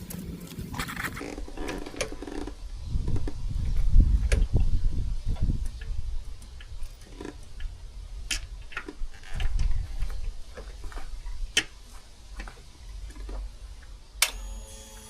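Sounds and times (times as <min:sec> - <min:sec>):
steady buzzing tone: 0:14.2 - 0:15.0.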